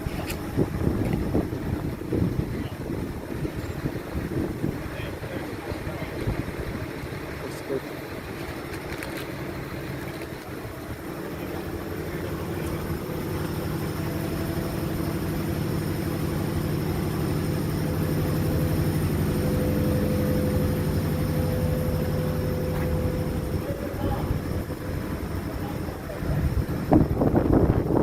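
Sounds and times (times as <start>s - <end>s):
vehicle engine running: 0.0s - 28.0s.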